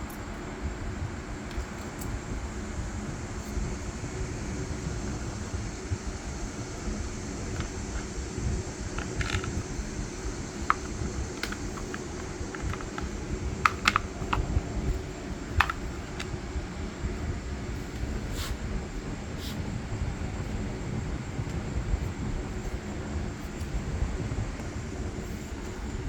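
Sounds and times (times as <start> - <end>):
steady low rumble: 0.0 - 26.0
metal parts clicking and tapping: 9.0 - 9.8, 10.6 - 14.6.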